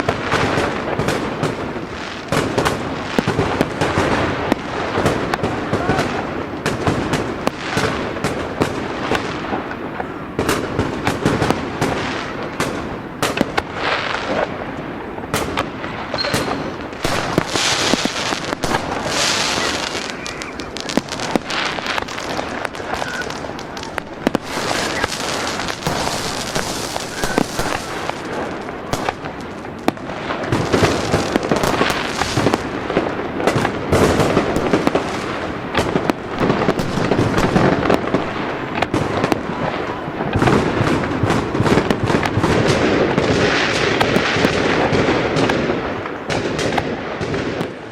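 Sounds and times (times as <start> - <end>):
fireworks bangs: 0.0 - 47.9
fireworks hissing and crackling: 0.0 - 47.9.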